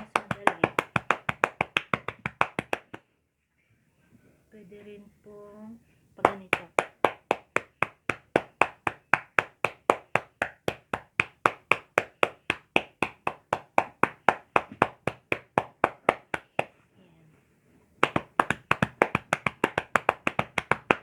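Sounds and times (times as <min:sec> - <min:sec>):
hand slaps on a back: 0:00.0 - 0:03.0, 0:06.2 - 0:16.8, 0:18.0 - 0:21.0.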